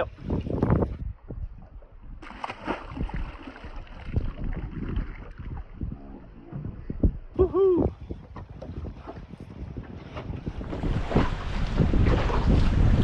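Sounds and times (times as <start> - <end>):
wind on microphone: 0.0 - 13.0
water splashing against boat hull: 2.2 - 5.9, 10.1 - 13.0.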